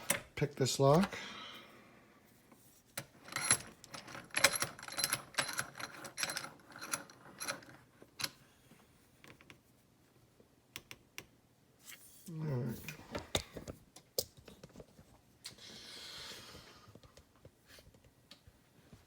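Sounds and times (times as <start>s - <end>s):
metal lock picks and padlock clinking: 3.3s - 8.4s.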